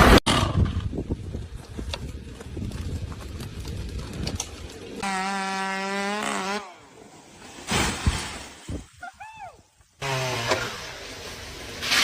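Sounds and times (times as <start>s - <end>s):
tree crashing down: 7.4s - 8.9s.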